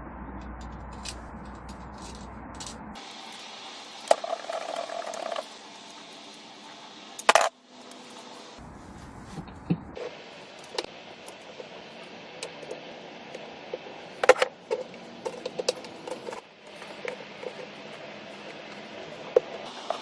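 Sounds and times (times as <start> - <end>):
low hum: 0.0 - 20.0
metal parts clinking and rattling: 0.5 - 6.0.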